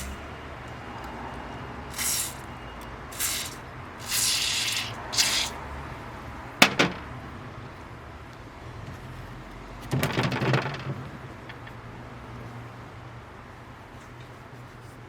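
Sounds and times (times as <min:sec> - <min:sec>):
aerosol spray can hissing: 0:01.9 - 0:02.5, 0:03.1 - 0:05.6.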